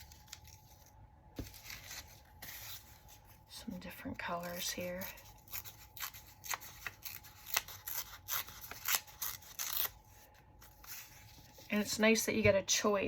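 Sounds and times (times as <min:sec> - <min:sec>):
scissors snipping paper: 0:04.5 - 0:10.0.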